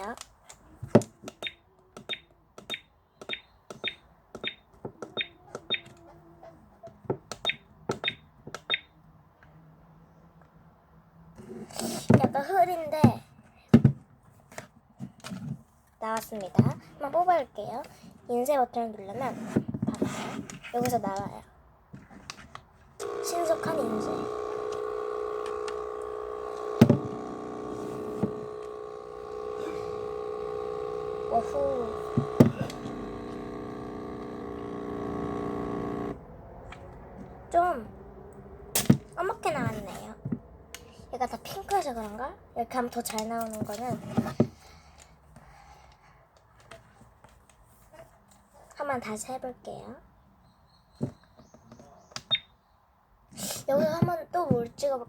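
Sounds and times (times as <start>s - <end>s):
printer motor whine: 23.0s - 36.2s
printer sharp click: 23.0s - 36.2s.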